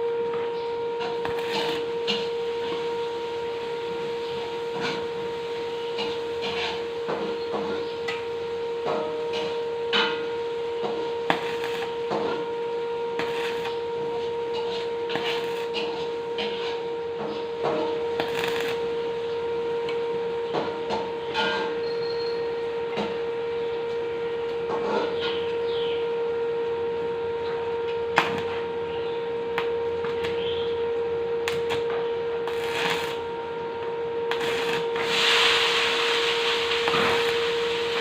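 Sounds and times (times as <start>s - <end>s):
welding machine humming: 0.0s - 38.0s
hissing crackle: 11.3s - 12.0s, 13.2s - 13.8s, 18.2s - 18.8s, 32.4s - 33.2s, 34.3s - 38.0s.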